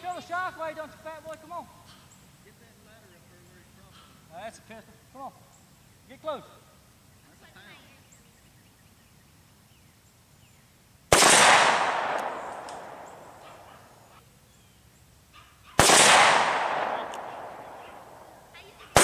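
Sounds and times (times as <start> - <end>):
pistol shots echoing: 11.1 - 14.0, 15.8 - 19.0.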